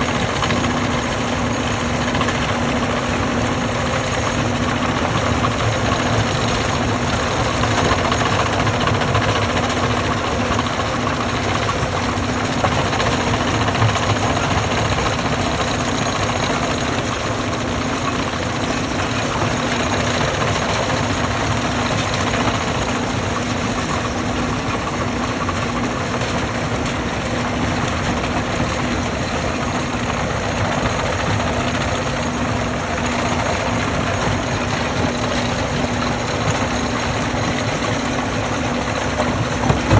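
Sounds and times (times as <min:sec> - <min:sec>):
stone crushing machine rumbling: 0:00.0 - 0:39.9.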